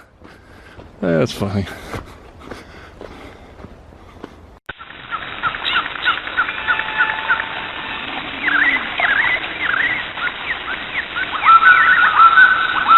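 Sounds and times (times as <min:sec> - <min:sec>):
bird-like chirps and whistles: 0:05.1 - 0:12.9.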